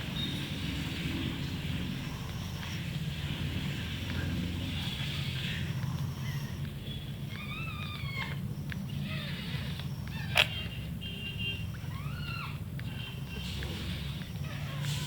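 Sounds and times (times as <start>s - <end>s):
puppies whining: 4.0s - 15.0s.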